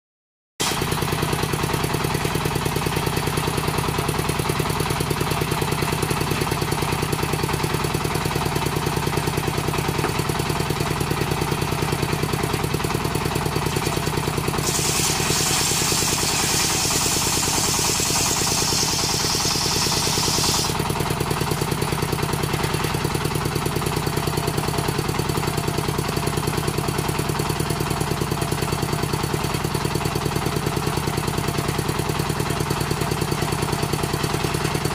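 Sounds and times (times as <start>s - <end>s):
circular saw engine running: 13.2s - 23.6s
saw blade ripping wood hiss: 14.5s - 20.8s.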